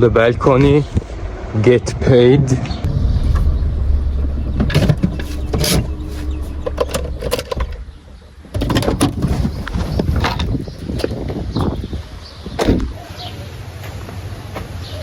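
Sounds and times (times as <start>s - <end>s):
car driving rumble: 2.7s - 11.9s.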